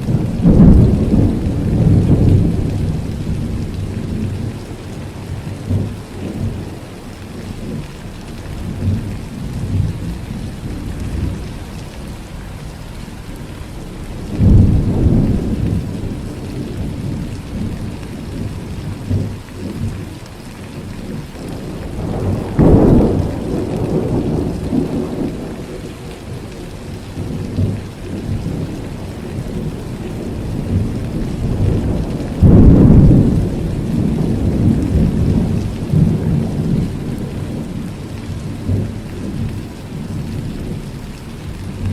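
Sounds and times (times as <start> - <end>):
loud thunder peals: 0.0 - 4.6, 14.2 - 17.7, 21.5 - 26.4, 27.2 - 37.8
rumbling thunder: 0.0 - 7.9, 8.5 - 12.3, 13.3 - 20.1, 20.8 - 41.0
steady rain falling: 0.0 - 41.9.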